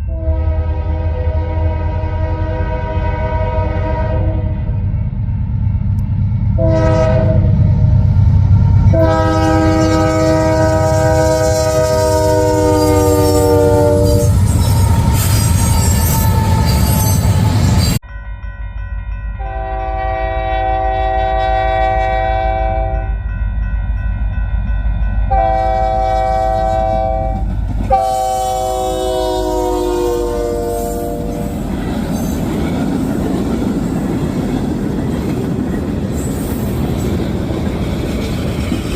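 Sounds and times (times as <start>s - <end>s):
locomotive air horn chords: 0.0s - 4.8s, 6.6s - 7.6s, 8.9s - 17.2s, 19.4s - 23.1s, 25.3s - 31.6s
passing train rumble: 0.0s - 18.1s, 18.8s - 38.9s.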